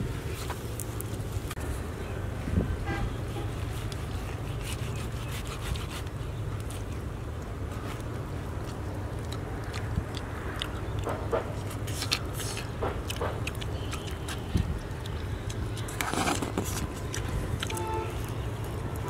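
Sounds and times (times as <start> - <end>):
mouth clicks and smacks: 6.0 - 19.0.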